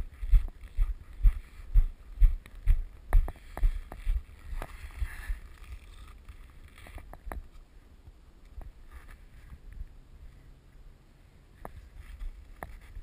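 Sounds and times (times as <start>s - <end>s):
footsteps walking: 0.0s - 7.5s.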